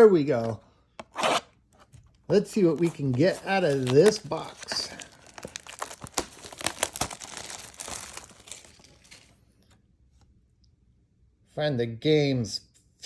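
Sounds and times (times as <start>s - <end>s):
shrink wrap crinkling and tearing: 2.3s - 9.5s.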